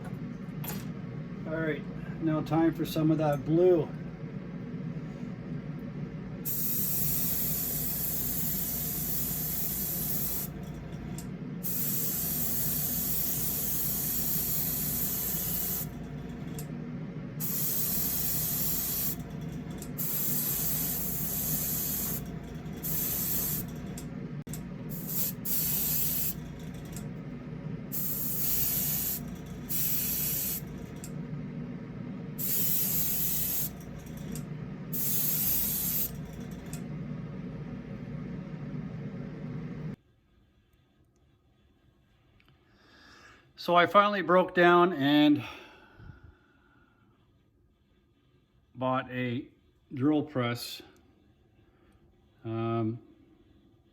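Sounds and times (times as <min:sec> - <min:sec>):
steady low hum: 0:00.0 - 0:42.8
airbrush hissing: 0:06.4 - 0:10.7, 0:11.6 - 0:16.1, 0:17.4 - 0:27.0, 0:27.9 - 0:31.0, 0:32.4 - 0:36.5.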